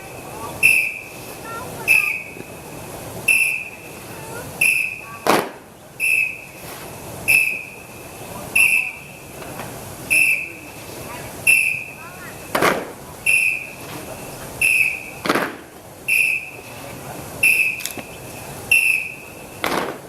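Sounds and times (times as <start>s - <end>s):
whistle blasts: 0.0s - 2.6s, 3.2s - 9.4s, 10.1s - 10.8s, 11.4s - 12.6s, 13.2s - 16.7s, 17.4s - 20.0s
sharp thump: 5.2s - 5.6s, 12.5s - 13.0s, 15.2s - 15.7s, 19.6s - 20.0s.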